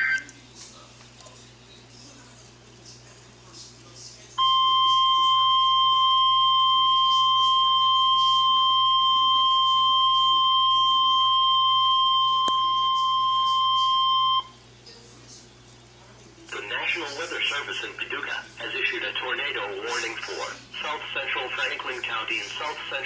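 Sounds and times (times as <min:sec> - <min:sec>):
single-pitch alarm tone: 0:04.4 - 0:14.5.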